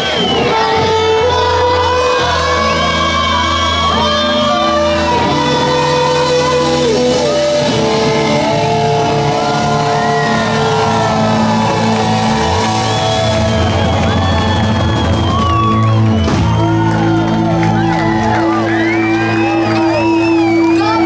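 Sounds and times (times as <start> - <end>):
bending lead guitar lines: 0.0 - 21.0
live rock band playing: 0.0 - 21.0
steady bass: 0.0 - 21.0.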